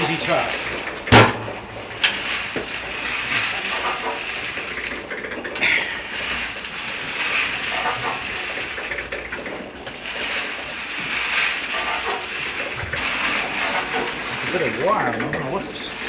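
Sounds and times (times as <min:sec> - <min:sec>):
nuts tumbling in rotating drum: 0:00.0 - 0:16.0.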